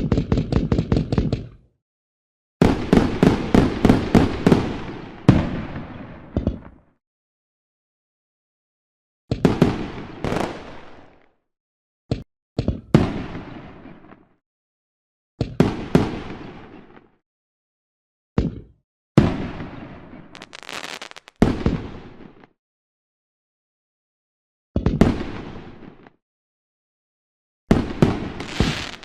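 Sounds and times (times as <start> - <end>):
fireworks bangs: 9.5 - 11.3, 20.3 - 22.1, 27.8 - 29.0
fireworks crackling: 10.2 - 11.1, 20.4 - 21.5, 28.3 - 29.0.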